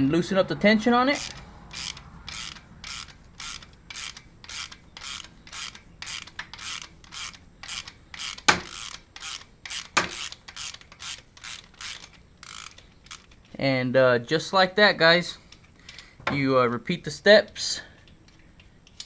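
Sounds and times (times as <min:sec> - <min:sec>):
ratchet clicking: 0:01.2 - 0:13.4
sharp metallic clicks: 0:01.2 - 0:13.6.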